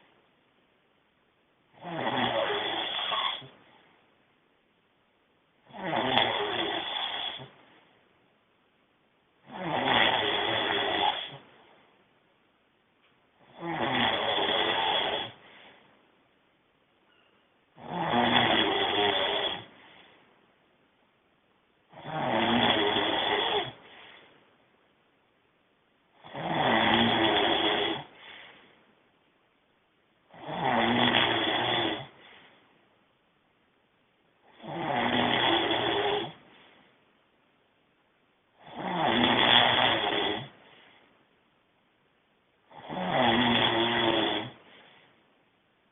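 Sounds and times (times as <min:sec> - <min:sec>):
man snoring loudly: 0:01.8 - 0:03.5, 0:05.7 - 0:07.5, 0:09.5 - 0:11.4, 0:13.4 - 0:15.4, 0:17.8 - 0:19.7, 0:21.9 - 0:23.8, 0:26.2 - 0:28.1, 0:30.3 - 0:32.1, 0:34.5 - 0:36.4, 0:38.6 - 0:40.5, 0:42.7 - 0:44.6.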